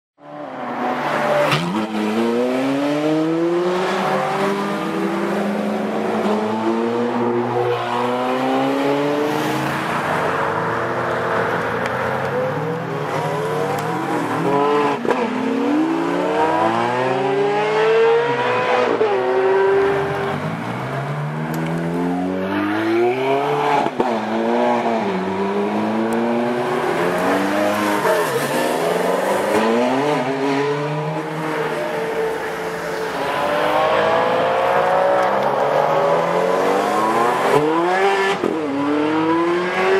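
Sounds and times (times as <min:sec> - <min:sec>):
sports car accelerating hard: 0:33.0 - 0:39.9.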